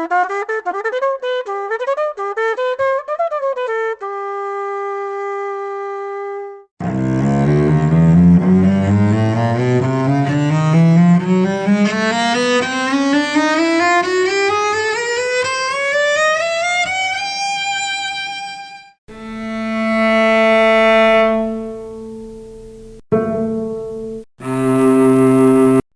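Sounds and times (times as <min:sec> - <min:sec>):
bowed cello ascending scale: 0:06.8 - 0:21.8.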